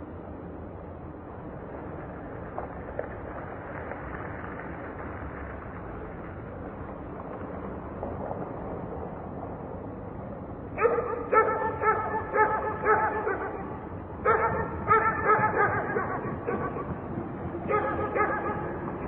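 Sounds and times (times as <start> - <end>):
distant traffic hum: 0.0 - 19.0
dog barking: 10.8 - 17.0, 17.6 - 19.0.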